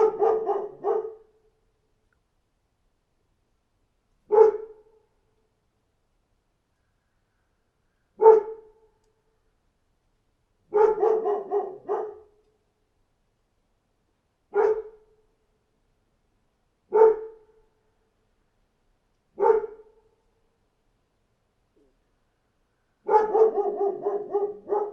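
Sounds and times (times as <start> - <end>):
dog barking: 0.0 - 1.3, 4.3 - 4.9, 8.2 - 8.8, 10.7 - 12.4, 14.5 - 15.0, 16.9 - 17.5, 19.4 - 20.0, 23.0 - 24.9.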